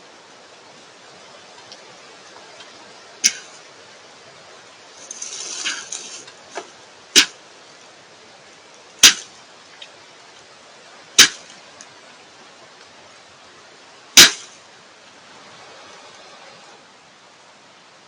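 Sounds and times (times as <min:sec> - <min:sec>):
hissing rush of air: 0:14.2 - 0:17.4.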